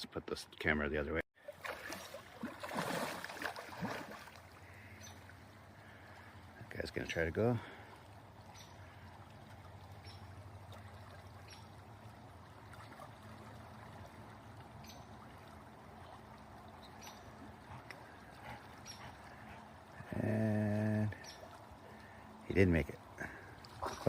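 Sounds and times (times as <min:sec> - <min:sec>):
stream flowing: 0:00.0 - 0:24.0
faint short splashes: 0:01.4 - 0:06.4, 0:23.1 - 0:24.0.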